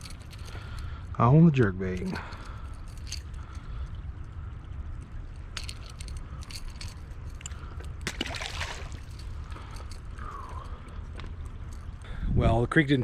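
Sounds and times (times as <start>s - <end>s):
splash in water: 8.1s - 9.1s.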